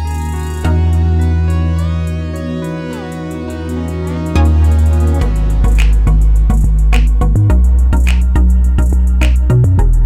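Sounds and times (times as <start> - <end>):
instrumental background music: 0.0 - 10.0.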